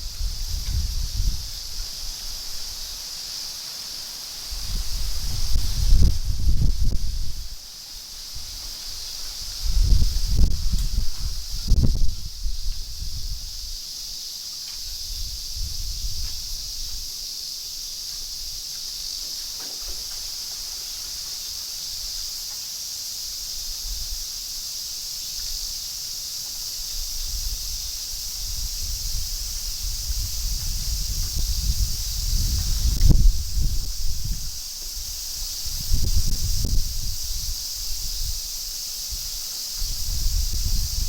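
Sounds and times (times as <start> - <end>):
low wind rumble: 0.0 - 2.9, 4.6 - 7.6, 9.4 - 13.8, 27.1 - 38.6, 39.2 - 41.0
trees rustling in wind: 0.0 - 41.0
high-pitched insect drone: 4.4 - 41.0.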